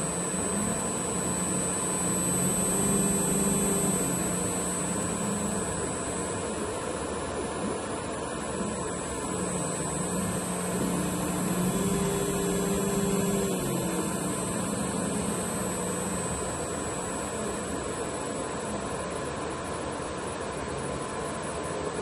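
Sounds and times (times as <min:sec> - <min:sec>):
rising and falling motor tone: 0:00.0 - 0:05.9, 0:09.2 - 0:16.6
servo motor humming: 0:00.0 - 0:06.6, 0:08.5 - 0:17.7.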